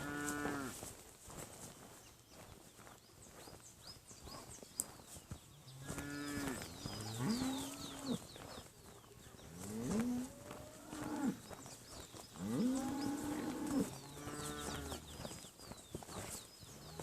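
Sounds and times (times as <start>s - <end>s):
cattle mooing: 12.4s - 15.0s.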